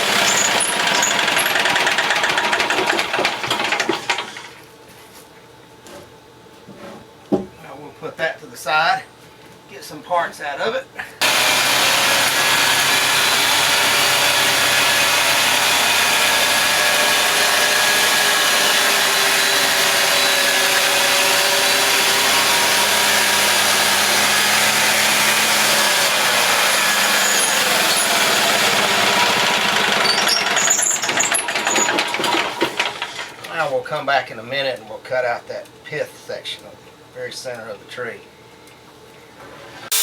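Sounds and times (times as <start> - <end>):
sawmill blade cutting wood: 0.0 - 4.6, 11.2 - 33.4
sawmill motor running: 0.0 - 4.6, 11.2 - 33.4.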